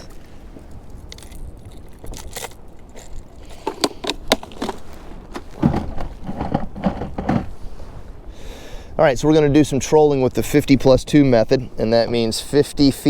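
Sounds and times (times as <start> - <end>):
fishing gear clicks and rattles: 0.0 - 7.5
dull knocks: 5.4 - 7.5.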